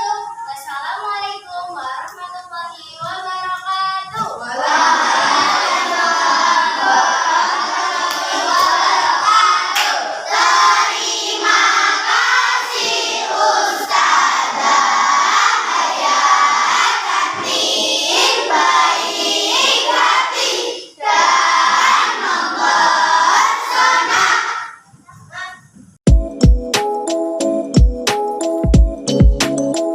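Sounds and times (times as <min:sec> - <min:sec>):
children singing in unison: 0:04.1 - 0:24.8.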